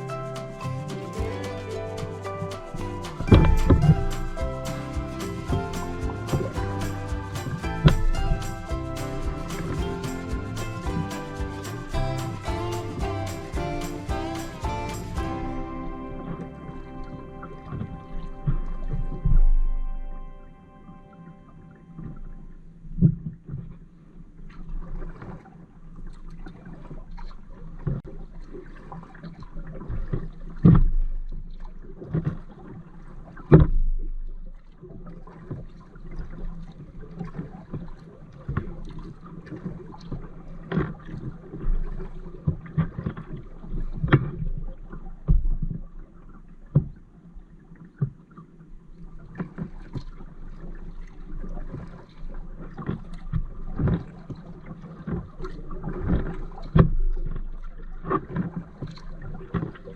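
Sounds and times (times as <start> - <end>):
paddle strokes: 0.0 - 20.0, 34.5 - 59.9
water sloshing against hull: 21.1 - 59.9.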